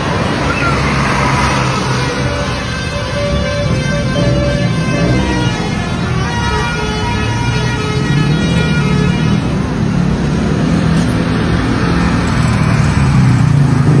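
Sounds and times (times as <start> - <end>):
bus horn playing musical notes: 1.9 - 9.4.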